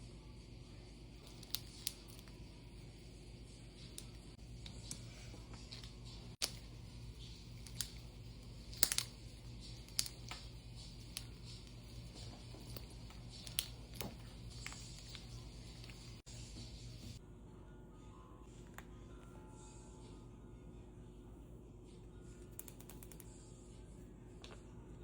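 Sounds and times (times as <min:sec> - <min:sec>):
faint low hum: 0:00.0 - 0:25.0
fidget toys clicking and tapping: 0:05.7 - 0:16.0, 0:22.5 - 0:23.3.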